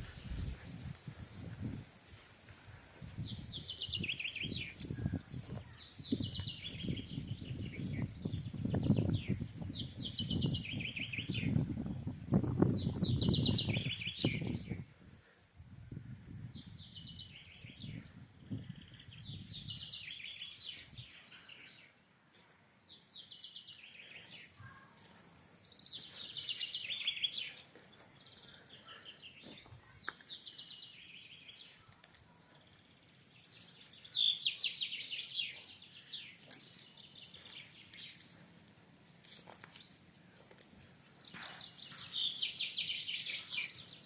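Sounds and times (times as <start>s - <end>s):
songbird trilling song: 3.0s - 15.4s, 16.3s - 22.0s, 25.4s - 32.0s, 32.6s - 38.6s, 41.0s - 44.0s.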